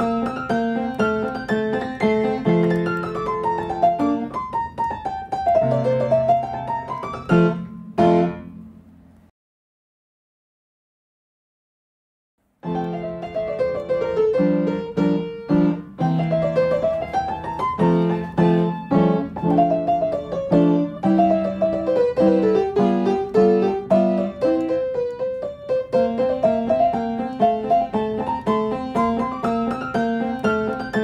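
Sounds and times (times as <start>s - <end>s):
keyboard instrumental music: 0.0s - 8.8s, 12.6s - 31.0s.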